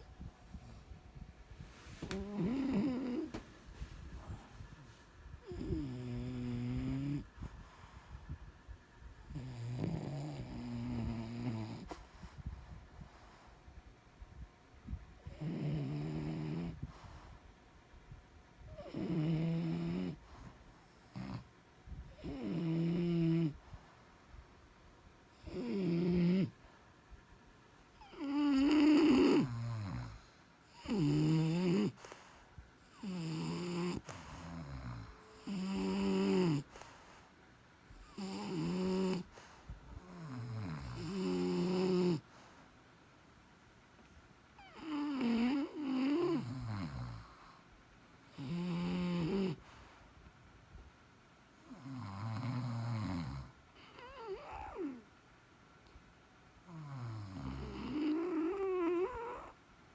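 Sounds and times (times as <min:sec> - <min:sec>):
dog snoring: 0:02.0 - 0:03.4, 0:05.4 - 0:08.2, 0:09.3 - 0:12.4, 0:15.2 - 0:17.3, 0:18.7 - 0:20.5, 0:21.1 - 0:21.5, 0:22.1 - 0:23.7, 0:25.3 - 0:26.5, 0:28.0 - 0:37.3, 0:37.9 - 0:42.5, 0:44.6 - 0:47.6, 0:48.3 - 0:50.0, 0:51.6 - 0:55.0, 0:56.6 - 0:59.6.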